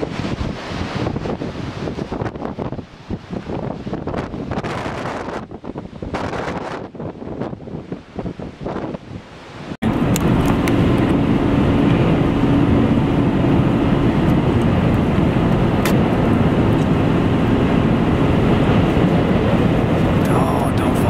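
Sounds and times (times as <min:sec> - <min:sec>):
storm wind rushing: 0:00.0 - 0:21.0
wind buffeting microphone: 0:00.0 - 0:21.0
car road noise: 0:09.8 - 0:21.0.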